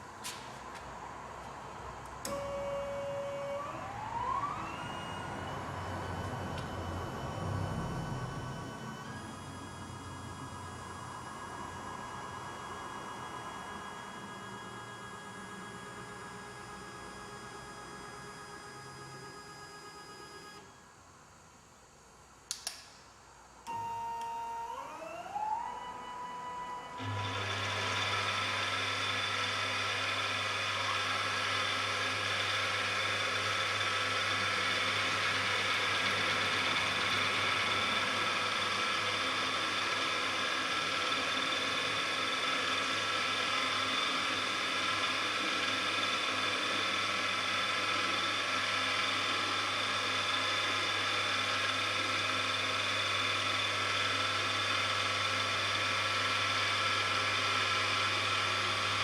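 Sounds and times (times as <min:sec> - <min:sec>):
machine noise with low hum: 0:00.0 - 0:59.0
stepper motor whine: 0:02.2 - 0:20.9, 0:23.6 - 0:59.0.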